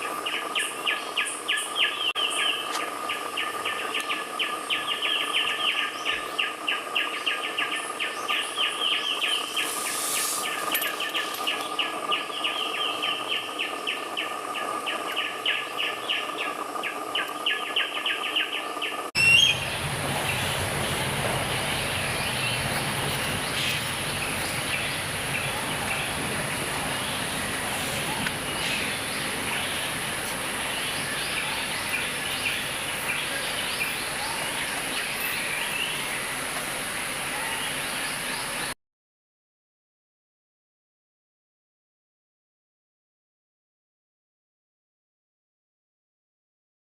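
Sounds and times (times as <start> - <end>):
birds chirping: 0.0 - 38.8
steady high hiss: 1.8 - 16.6, 19.1 - 38.7.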